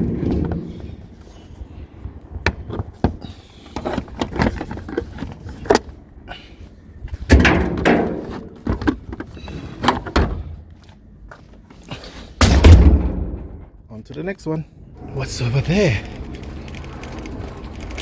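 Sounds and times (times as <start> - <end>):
junk knocking and clattering: 7.2 - 10.6, 12.4 - 13.8.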